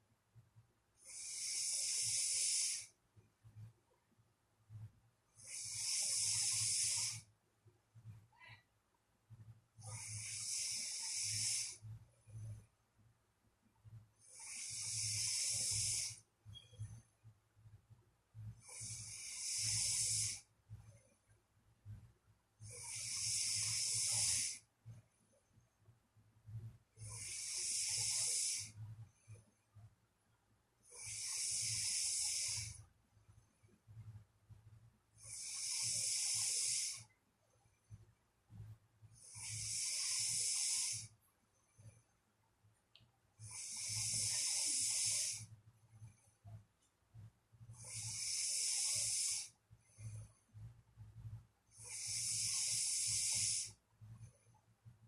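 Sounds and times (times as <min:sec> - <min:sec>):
person snoring: 0:01.1 - 0:02.9, 0:05.4 - 0:07.3, 0:09.8 - 0:11.8, 0:14.2 - 0:16.2, 0:18.6 - 0:20.5, 0:22.6 - 0:24.6, 0:27.0 - 0:28.8, 0:30.9 - 0:32.8, 0:35.2 - 0:37.0, 0:39.2 - 0:41.1, 0:43.4 - 0:45.4, 0:47.8 - 0:49.5, 0:51.8 - 0:53.8.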